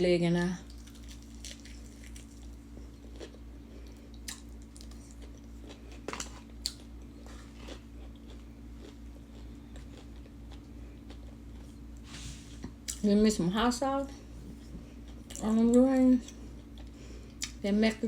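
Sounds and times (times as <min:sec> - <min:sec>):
steady low hum: 0:00.0 - 0:18.0
person chewing crunchy food: 0:00.6 - 0:13.0, 0:16.2 - 0:17.6.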